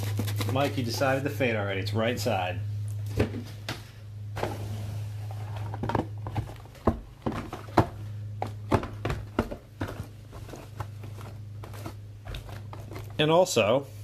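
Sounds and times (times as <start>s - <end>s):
cardboard rustle: 0.0s - 1.2s, 4.4s - 13.2s
low electrical hum: 0.0s - 14.0s
cardboard boxes knocking on table: 5.8s - 12.6s.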